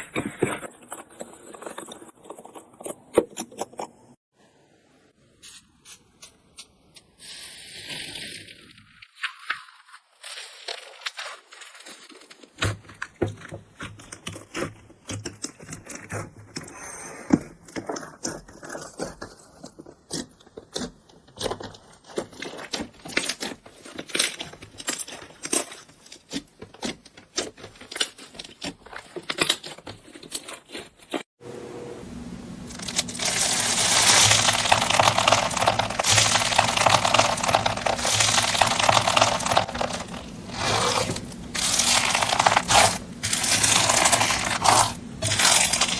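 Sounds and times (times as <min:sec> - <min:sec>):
crunchy slime crackling: 0:32.7 - 0:45.9.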